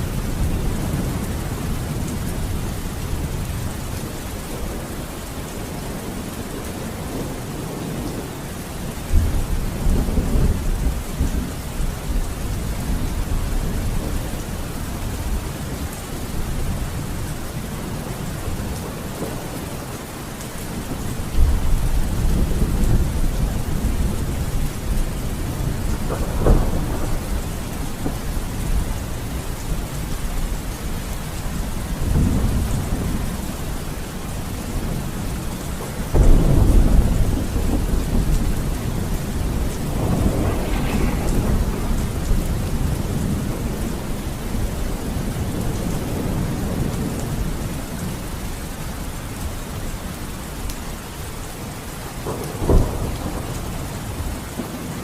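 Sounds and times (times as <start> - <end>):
heavy rain: 0.0 - 55.0
rolling thunder: 20.7 - 48.3, 52.2 - 55.0.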